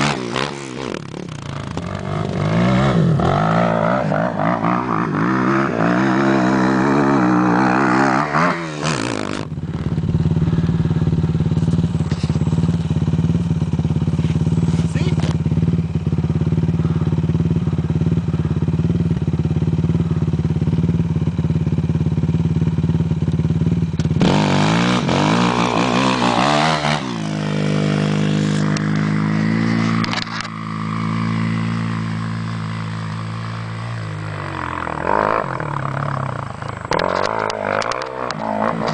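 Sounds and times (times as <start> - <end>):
quad bike engine running: 0.0 - 38.9.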